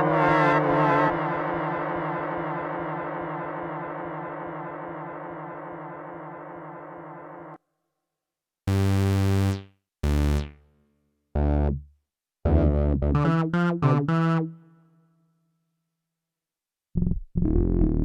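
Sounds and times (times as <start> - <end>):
bright synthesizer notes: 0.0 - 7.6, 8.7 - 10.6, 11.4 - 11.9, 12.5 - 14.6.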